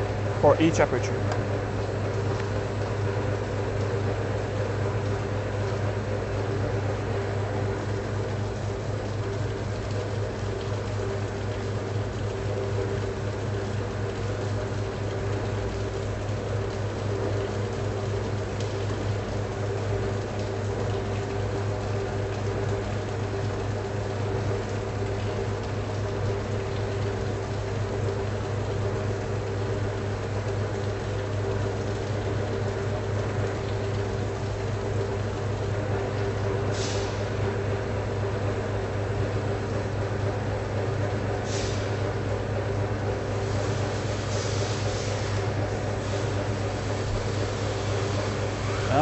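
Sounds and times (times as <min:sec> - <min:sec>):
machinery humming: 0:00.0 - 0:01.8.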